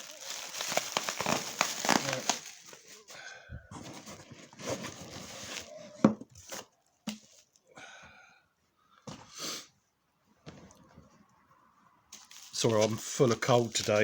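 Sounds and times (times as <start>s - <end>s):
packaging rustling: 0.0s - 3.2s, 3.8s - 7.6s, 12.1s - 14.0s
person sniffing and breathing: 9.0s - 9.8s.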